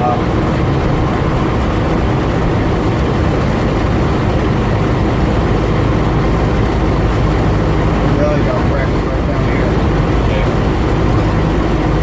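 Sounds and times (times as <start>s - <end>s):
engine rumbling: 0.0s - 12.0s.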